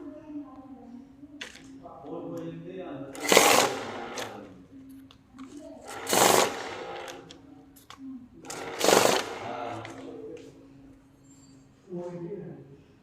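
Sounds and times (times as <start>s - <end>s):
banknote counting machine: 3.2s - 4.4s, 5.8s - 7.2s, 8.5s - 10.0s.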